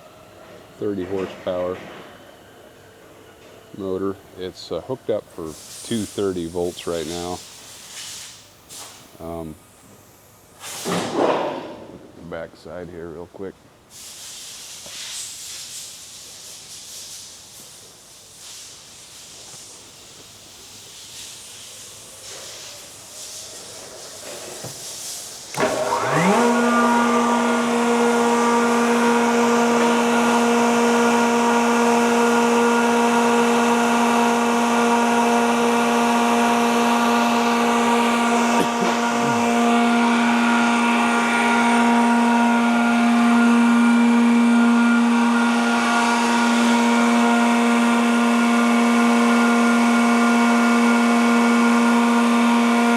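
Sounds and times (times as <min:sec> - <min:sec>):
air compressor running: 0:22.1 - 0:52.9.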